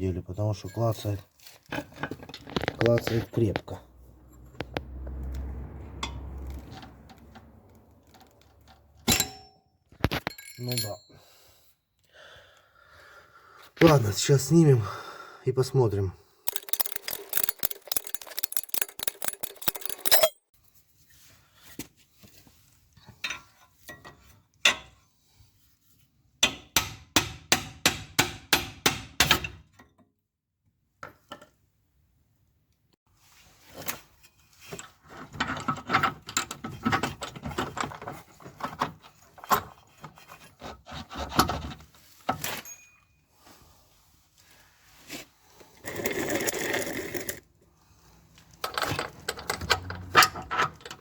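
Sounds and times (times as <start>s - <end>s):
hand tools clicking on metal bolts: 16.4s - 20.4s, 48.4s - 51.0s.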